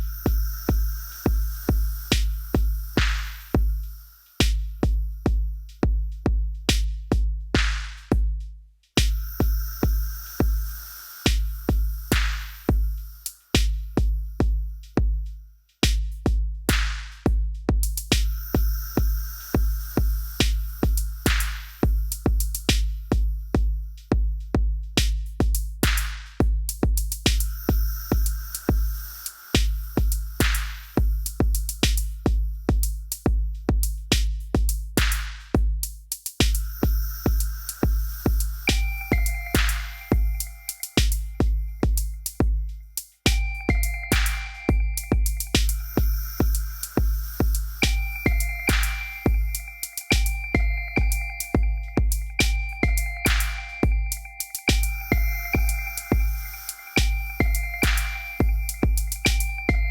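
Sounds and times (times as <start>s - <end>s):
hissy noise swell: 0.0s - 4.4s, 9.2s - 13.9s, 18.2s - 23.1s, 27.4s - 31.8s, 36.6s - 42.4s, 43.3s - 59.9s
electronic kick drum: 0.0s - 59.9s
clicking percussion: 9.0s - 15.1s, 15.8s - 59.9s
held synth tones: 37.4s - 41.7s, 43.3s - 59.9s.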